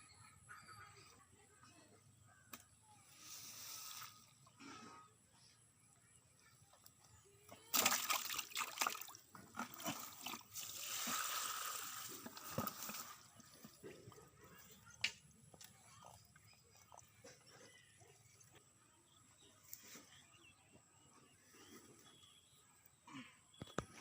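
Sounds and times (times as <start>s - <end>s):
water splashing and sloshing: 7.5s - 14.8s.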